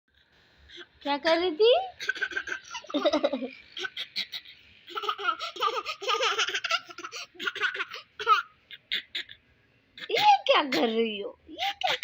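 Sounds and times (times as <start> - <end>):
baby laughing: 1.9 - 9.4, 10.0 - 11.0, 11.6 - 12.0.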